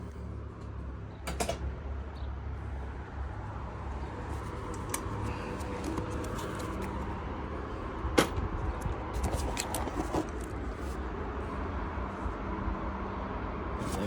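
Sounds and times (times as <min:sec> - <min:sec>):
clicks and knocks of parts handled: 0:04.3 - 0:07.1, 0:08.1 - 0:11.0.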